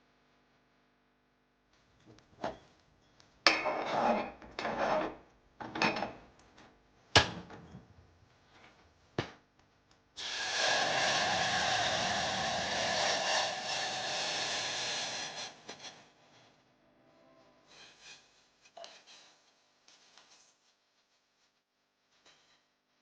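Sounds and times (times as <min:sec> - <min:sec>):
scraping and rubbing: 0:03.6 - 0:05.2
steady rushing hiss: 0:10.2 - 0:16.5.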